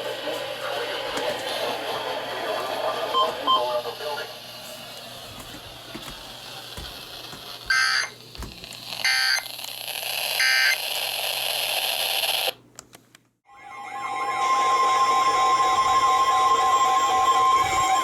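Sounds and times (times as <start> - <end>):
radio hiss: 0.0 - 5.2.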